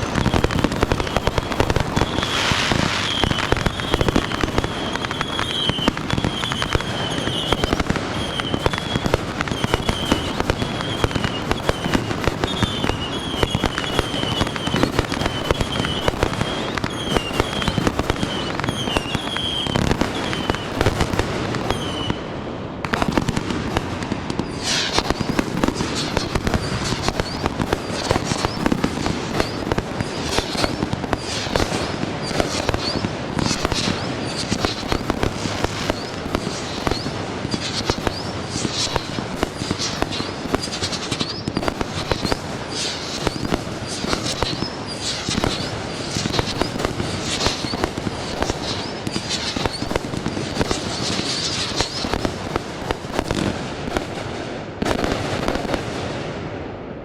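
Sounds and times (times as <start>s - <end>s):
falling firework whistle: 0.0s - 54.2s
fireworks bangs and crackle: 0.0s - 57.0s
high warbling whistle: 2.0s - 4.3s.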